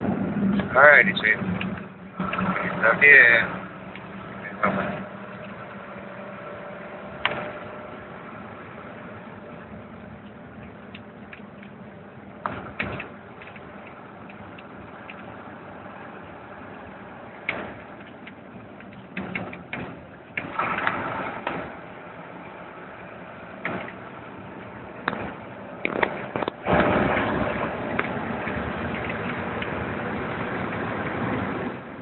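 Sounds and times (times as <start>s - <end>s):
car engine and road hum: 0.0s - 32.0s
sharp clicks and knocks: 1.4s - 2.7s, 7.2s - 7.6s, 10.2s - 11.8s, 12.4s - 15.3s, 17.4s - 21.8s, 23.6s - 29.8s.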